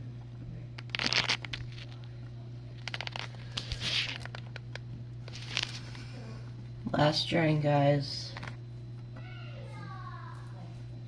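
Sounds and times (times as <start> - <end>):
dishwasher humming: 0.0 - 11.0
crinkling clicking noise: 2.8 - 4.9.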